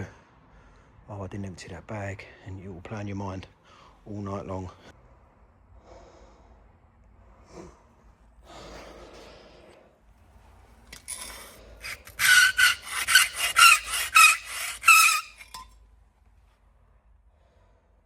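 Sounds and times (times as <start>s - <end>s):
hand scraper scraping wooden floor: 11.0s - 15.6s.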